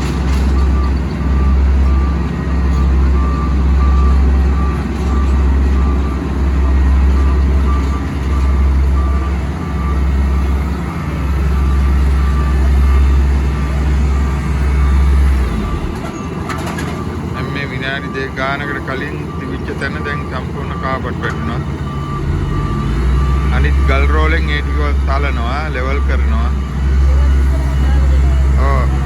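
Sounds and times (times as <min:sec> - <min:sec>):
diesel engine droning: 0:00.0 - 0:29.0
reversing alarm beeping: 0:00.0 - 0:29.0.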